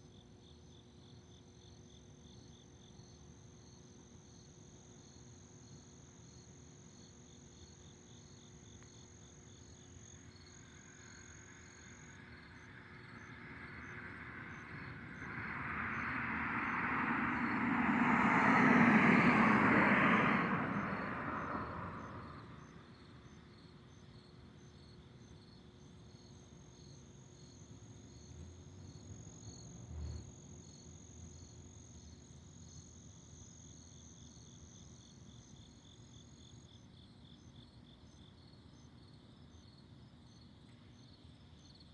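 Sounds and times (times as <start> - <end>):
crickets trilling: 7.6 - 32.8
vehicle passing: 11.5 - 22.6, 28.1 - 31.5.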